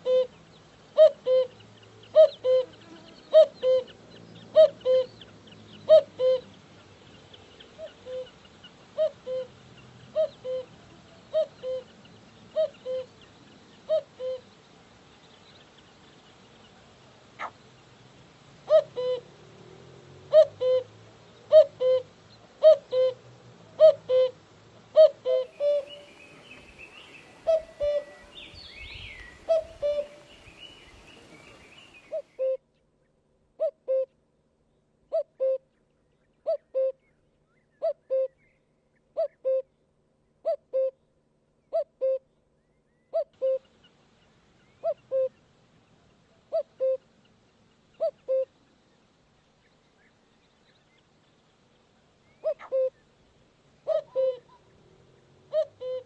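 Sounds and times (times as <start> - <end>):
cuckoo calling: 0.0 - 0.4, 1.0 - 5.2, 5.9 - 6.5, 7.8 - 8.4, 9.0 - 9.5, 10.1 - 11.9, 12.5 - 13.1, 13.9 - 14.5, 18.7 - 19.3, 20.3 - 20.9, 21.5 - 23.2, 23.8 - 32.6, 43.1 - 43.7, 44.8 - 45.4, 46.5 - 47.1, 48.0 - 48.5, 52.3 - 53.0, 53.9 - 54.6, 55.5 - 56.0
bird chirping: 25.0 - 32.9.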